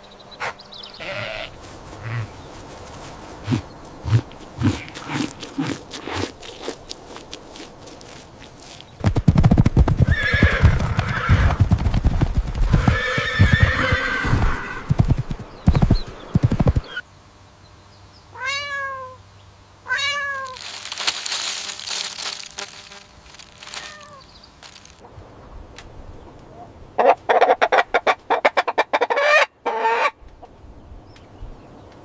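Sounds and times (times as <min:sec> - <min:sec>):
hoofbeats: 0:01.1 - 0:17.0
horse whinnying: 0:10.0 - 0:11.6, 0:12.6 - 0:15.0
cat meowing: 0:18.4 - 0:19.2, 0:19.9 - 0:20.6, 0:23.8 - 0:24.3.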